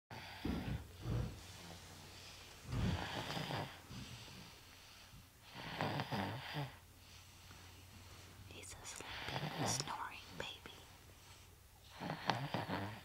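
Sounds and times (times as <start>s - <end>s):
quiet breathing: 0.1s - 13.0s
person snoring: 2.7s - 3.8s, 5.5s - 6.8s, 9.0s - 9.9s, 11.9s - 13.0s.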